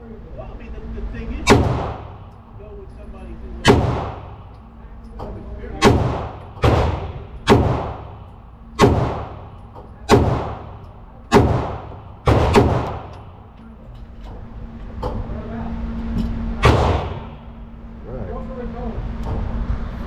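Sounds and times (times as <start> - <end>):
pistol shots: 1.5 - 2.2, 3.6 - 4.5, 5.8 - 8.2, 8.8 - 9.5, 10.1 - 13.2, 16.6 - 17.4.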